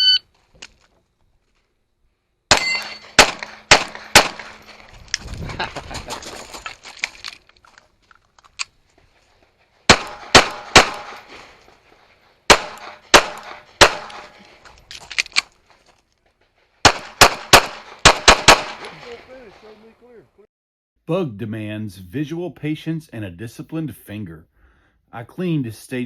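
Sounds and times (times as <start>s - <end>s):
pistol shots: 2.5s - 4.8s, 9.9s - 11.3s, 12.5s - 14.4s, 16.8s - 19.2s
gun handling clicks: 7.0s - 8.8s, 12.7s - 15.6s.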